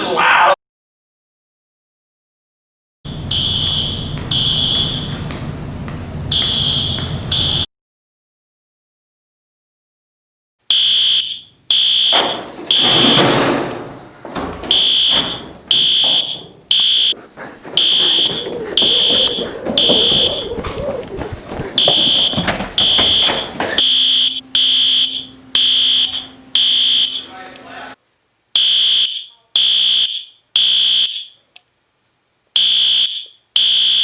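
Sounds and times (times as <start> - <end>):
fire alarm high-pitched pulses: 3.1 - 5.3, 6.3 - 7.7, 10.7 - 13.6, 14.3 - 27.9, 28.6 - 31.4, 32.6 - 34.0.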